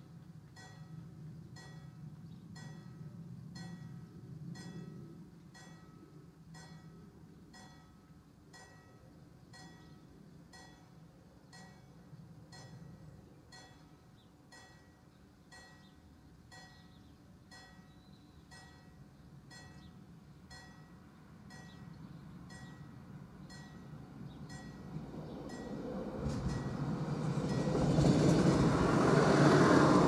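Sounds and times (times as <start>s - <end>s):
level crossing warning bell: 0.6s - 2.0s, 2.6s - 28.2s
approaching train rumble: 16.4s - 30.0s.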